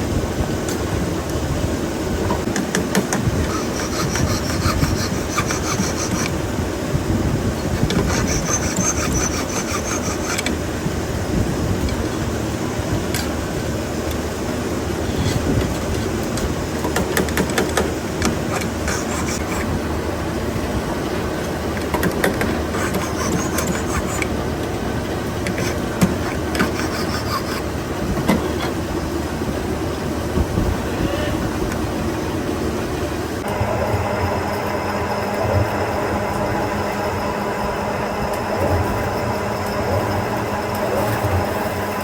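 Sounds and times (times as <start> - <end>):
factory machinery running: 0.0 - 42.0.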